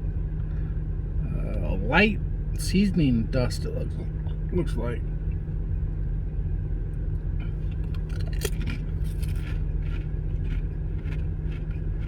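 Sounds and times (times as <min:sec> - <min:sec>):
potato chip crunching: 0:07.7 - 0:12.0.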